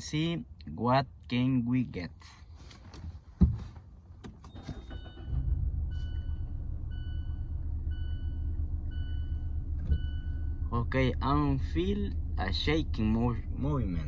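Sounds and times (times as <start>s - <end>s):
car engine starting and idling: 3.9s - 14.0s.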